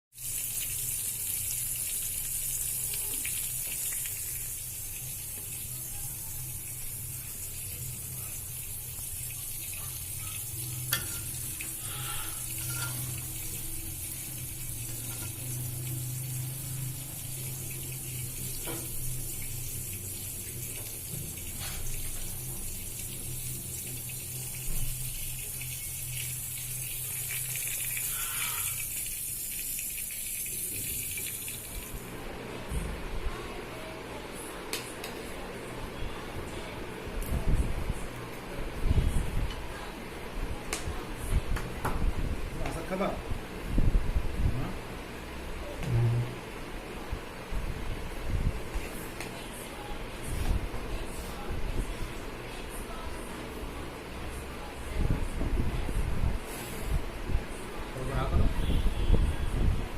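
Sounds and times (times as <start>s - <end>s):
running water hissing: 0.1s - 32.1s.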